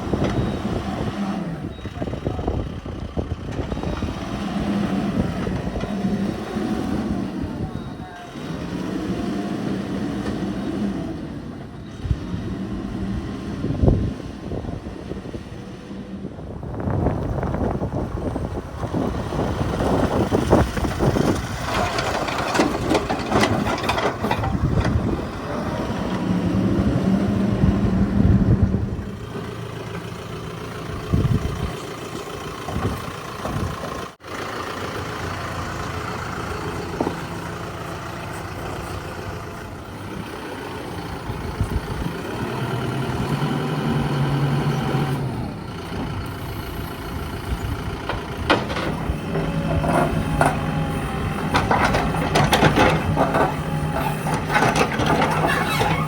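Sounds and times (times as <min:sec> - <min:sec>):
diesel engine revving: 0:00.0 - 0:56.0
machine knocks and clanks: 0:48.0 - 0:50.8, 0:51.4 - 0:56.0.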